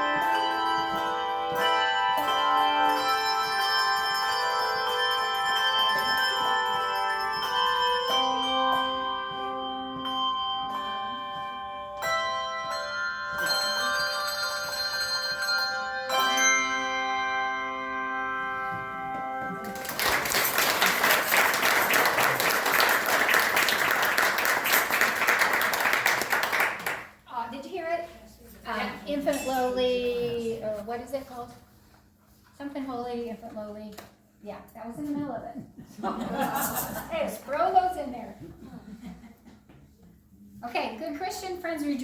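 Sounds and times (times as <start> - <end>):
handbell choir ringing chords: 0.0 - 26.2
audience applause: 19.6 - 27.1.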